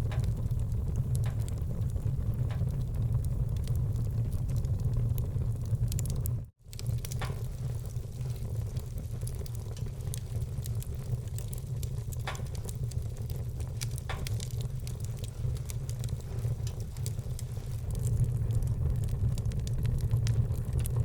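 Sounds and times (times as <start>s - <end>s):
steady low rumble: 0.0s - 21.0s
wood fire crackling and popping: 0.0s - 21.0s.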